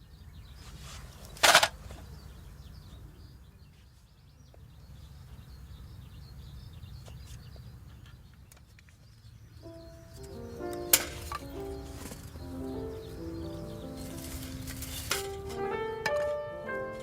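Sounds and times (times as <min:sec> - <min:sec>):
birds chirping: 0:00.0 - 0:17.0
sharp crack: 0:10.2 - 0:17.0.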